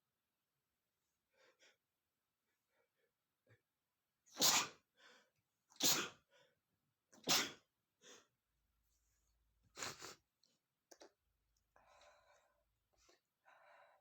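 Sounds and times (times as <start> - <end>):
man sneezing: 4.3 - 4.8, 5.8 - 6.2, 7.2 - 7.7
quiet breath: 11.7 - 14.0.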